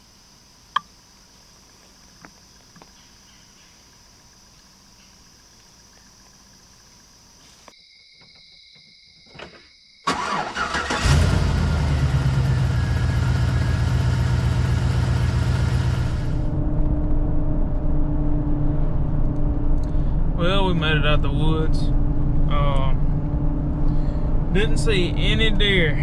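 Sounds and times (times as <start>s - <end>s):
engine cranking and starting: 10.1s - 16.4s.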